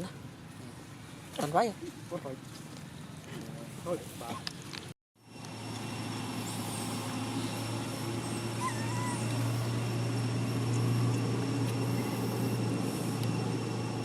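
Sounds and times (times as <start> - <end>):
low hum: 5.2 - 14.0
animal squeaks: 8.2 - 9.7.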